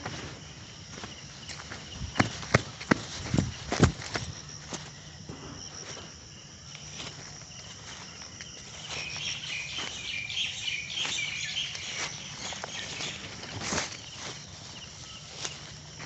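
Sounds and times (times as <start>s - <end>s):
footsteps on forest floor: 0.0s - 16.0s
high drone of insects: 0.0s - 16.0s
chirping calls: 8.9s - 14.2s.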